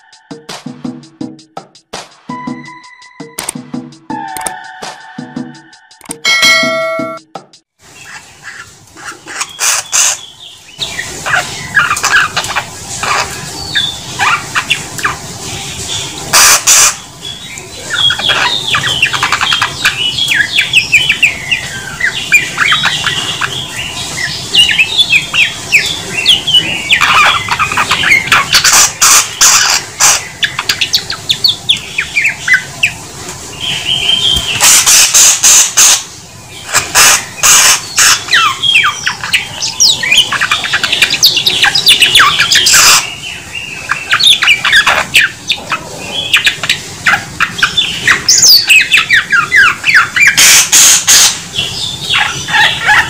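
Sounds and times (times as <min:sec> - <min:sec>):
harsh rasping bird notes: 0:08.0 - 0:33.0, 0:33.6 - 0:53.0
lark singing: 0:37.0 - 0:53.0.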